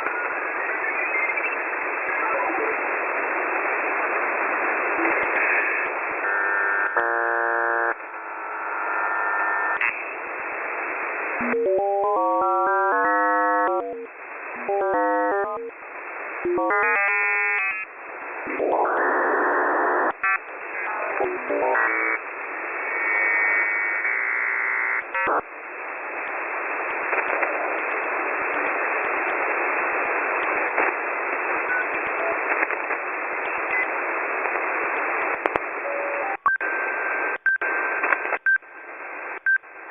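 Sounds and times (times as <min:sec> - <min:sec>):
radio static hiss: 0:00.0 - 0:39.9.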